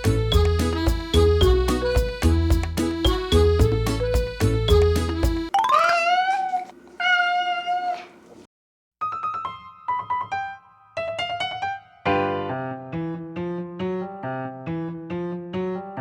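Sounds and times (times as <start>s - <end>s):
electric piano background music: 0.0s - 5.5s, 9.0s - 16.0s.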